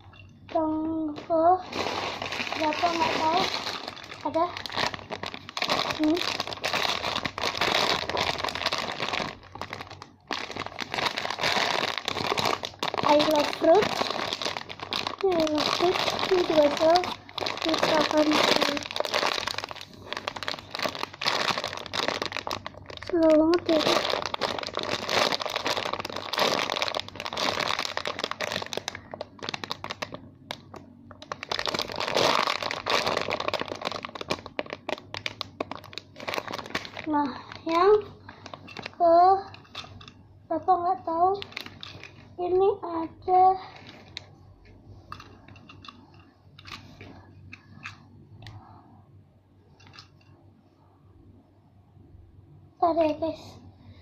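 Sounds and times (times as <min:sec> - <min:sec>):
packaging crinkling and rustling: 0:00.5 - 0:40.1, 0:41.0 - 0:42.4, 0:43.6 - 0:44.3, 0:45.1 - 0:48.0
foam toy crackles and clicks: 0:01.2 - 0:40.1.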